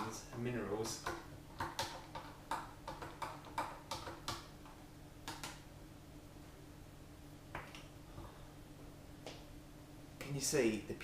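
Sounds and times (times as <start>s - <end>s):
sharp short clicks and taps: 0.0s - 5.6s
faint steady hum: 0.0s - 11.0s.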